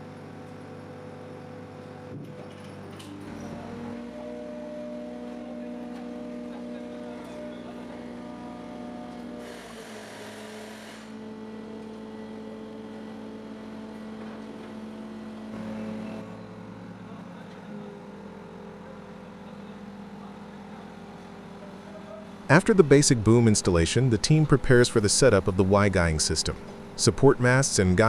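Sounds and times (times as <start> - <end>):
heavy machine engine humming: 10.5 - 28.0.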